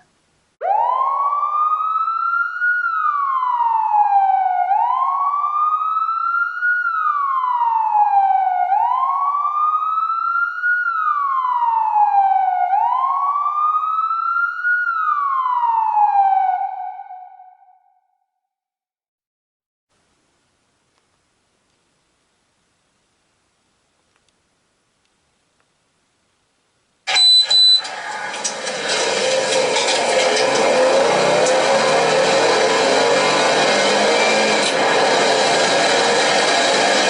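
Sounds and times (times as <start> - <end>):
police siren wailing: 0.6 - 17.8, 27.1 - 37.0.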